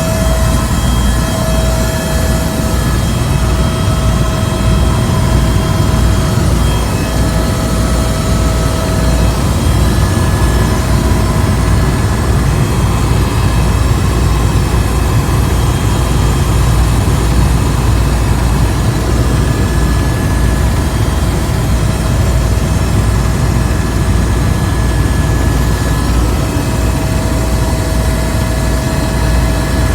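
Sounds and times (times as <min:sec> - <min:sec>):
thin whining tones: 0:00.0 - 0:14.4
helicopter rotor and engine rumble: 0:00.0 - 0:29.9.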